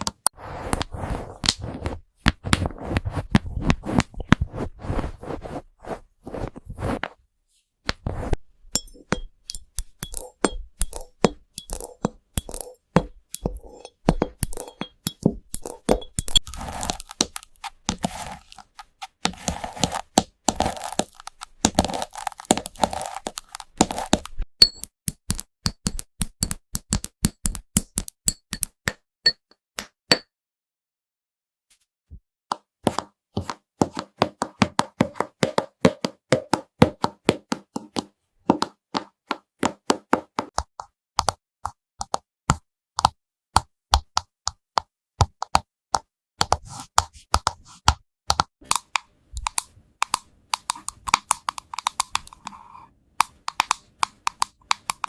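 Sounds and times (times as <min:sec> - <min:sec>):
keyboard clicks and taps: 0:08.8 - 0:29.0, 0:32.5 - 0:55.0.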